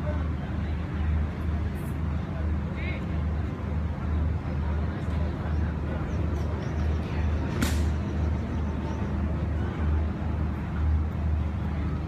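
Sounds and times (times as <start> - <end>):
sharp click: 7.6 - 8.0.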